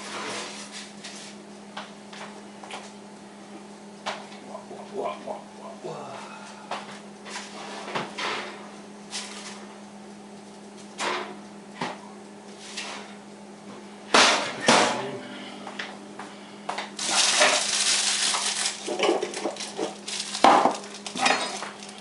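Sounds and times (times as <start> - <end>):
steady low hum: 0.0 - 22.0
rustling: 17.0 - 22.0
dishes or pans clanking: 18.9 - 21.7.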